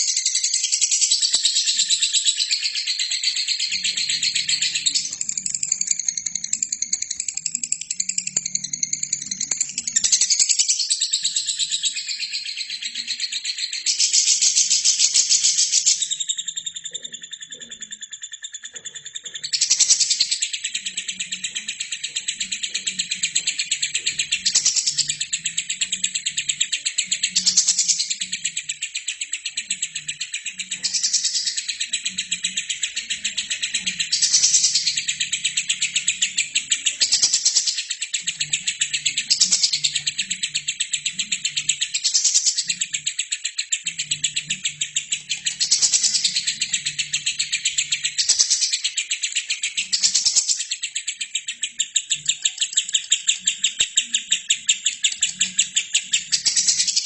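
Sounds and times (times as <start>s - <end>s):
lovebird chattering: 17.4s - 57.0s.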